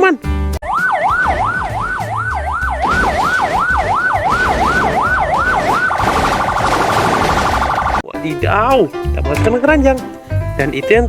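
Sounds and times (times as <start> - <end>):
electronic police siren: 0.6 - 8.0.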